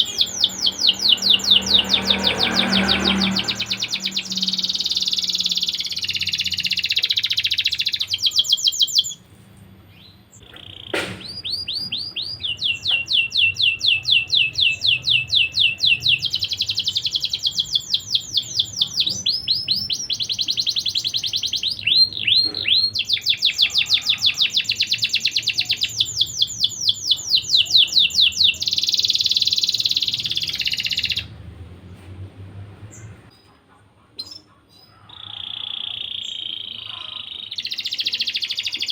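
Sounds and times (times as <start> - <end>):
canary singing trills: 0.0 - 9.3, 9.9 - 31.4, 34.2 - 38.9.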